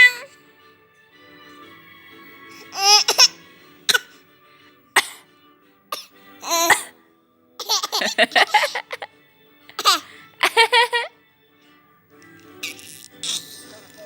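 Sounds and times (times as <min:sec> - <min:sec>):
baby vocal sounds: 0:00.0 - 0:00.3, 0:12.6 - 0:14.0
soft background music: 0:00.0 - 0:14.0
baby pretend coughing: 0:02.7 - 0:04.2, 0:05.0 - 0:05.3, 0:05.9 - 0:07.0, 0:09.8 - 0:10.1.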